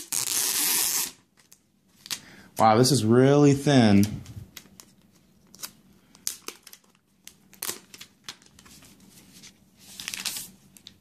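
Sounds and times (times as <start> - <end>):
plastic wrap crinkling: 4.6 - 9.0, 9.8 - 11.0.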